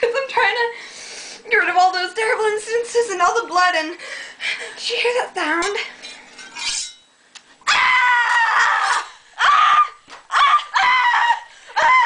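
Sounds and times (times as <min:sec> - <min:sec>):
girl screaming: 0:07.6 - 0:12.0.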